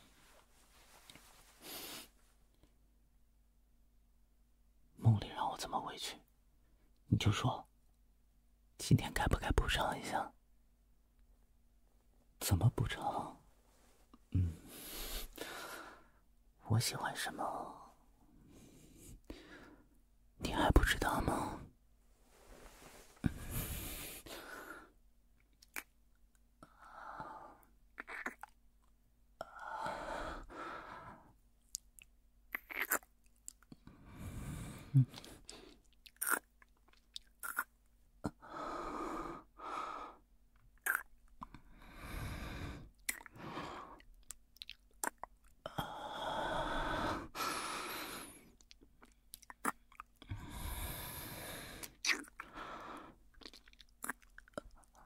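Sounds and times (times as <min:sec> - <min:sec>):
soft breaths: 0:00.0 - 0:02.8, 0:12.8 - 0:20.0, 0:20.6 - 0:25.0, 0:33.8 - 0:35.9, 0:41.5 - 0:44.1, 0:45.7 - 0:48.7, 0:50.2 - 0:53.7
wet lip smacks kissing: 0:51.8 - 0:52.4.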